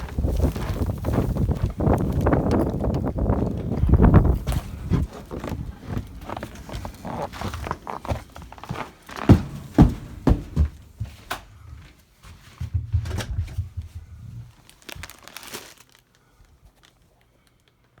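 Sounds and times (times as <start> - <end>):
footsteps crunching in snow: 0.0 - 11.3
rustling and shuffling: 0.0 - 17.6.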